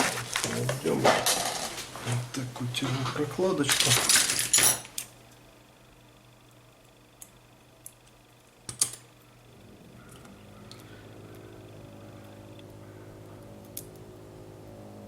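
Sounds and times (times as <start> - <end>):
faint steady hum: 0.0 - 15.0
small ticks: 10.0 - 14.1.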